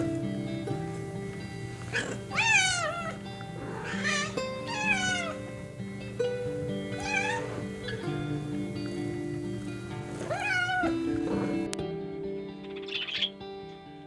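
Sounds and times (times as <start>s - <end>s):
background music sustained notes: 0.0s - 14.0s
cat meowing: 1.9s - 5.5s, 7.0s - 8.0s, 10.1s - 11.6s.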